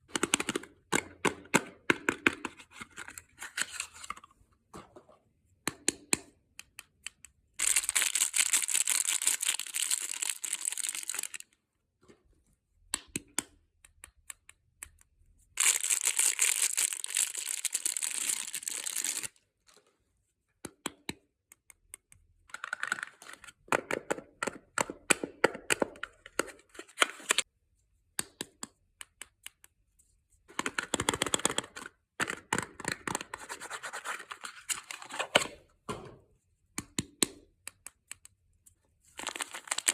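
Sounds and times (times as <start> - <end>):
wrapper tearing and rustling: 7.6 - 11.4, 15.6 - 19.4, 39.2 - 39.9.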